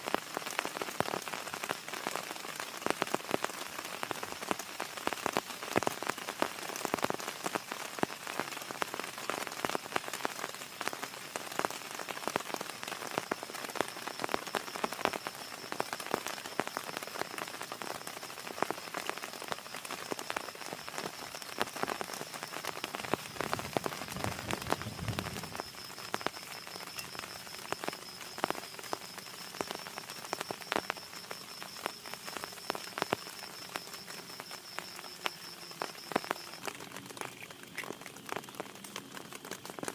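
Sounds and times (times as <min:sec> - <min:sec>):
heavy rain falling: 0:00.0 - 0:39.9
raindrops tapping on a surface: 0:00.0 - 0:39.9.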